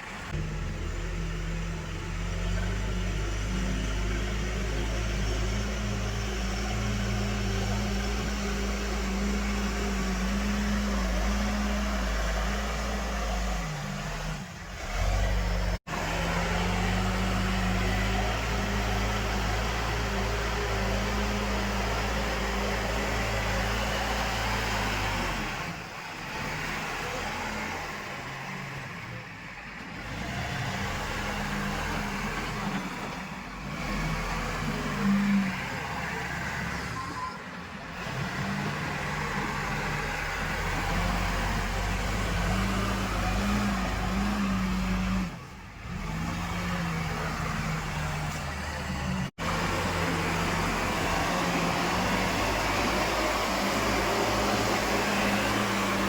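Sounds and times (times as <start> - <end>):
backhoe loader diesel engine: 0.0 - 56.0.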